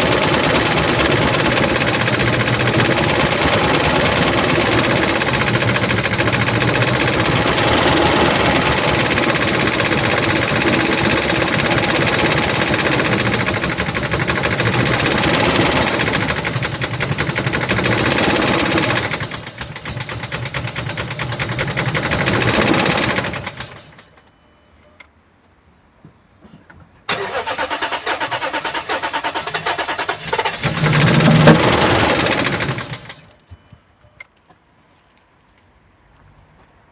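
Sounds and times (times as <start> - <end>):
engine running with rhythmic knock: 0.0 - 24.1, 30.5 - 34.3.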